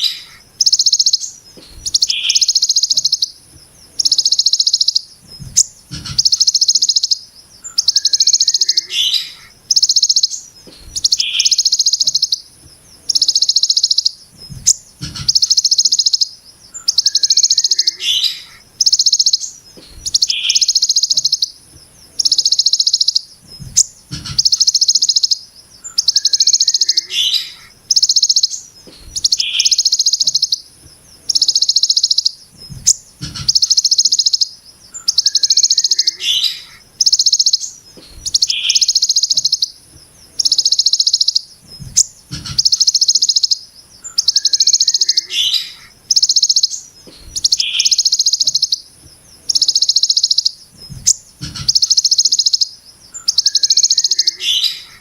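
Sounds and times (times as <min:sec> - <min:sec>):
bird chips: 0:00.0 - 0:55.0
bird singing buzzing trills: 0:00.0 - 0:55.0
faint low knocks: 0:05.2 - 0:06.3, 0:23.4 - 0:24.5, 0:41.6 - 0:42.7.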